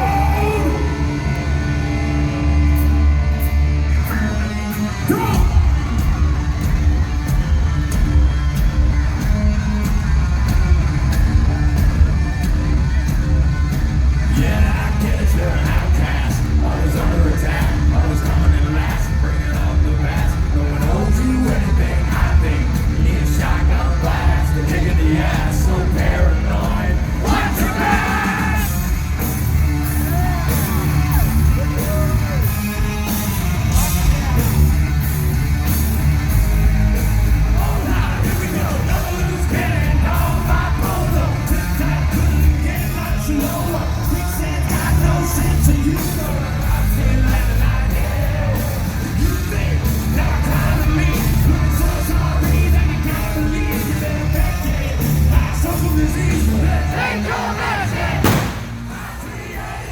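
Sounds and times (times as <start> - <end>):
person yelling vocals: 0.0 - 0.9
live rock band playing: 0.0 - 59.4
drums: 0.0 - 59.9
heavy bass: 0.0 - 59.9.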